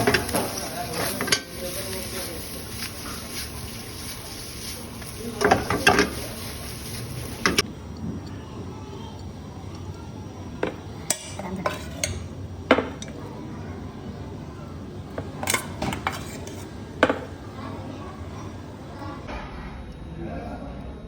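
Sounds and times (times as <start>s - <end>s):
metal pots and utensils clanking: 0.0s - 7.6s, 10.6s - 13.2s, 15.2s - 17.4s
steady background noise: 0.0s - 21.0s.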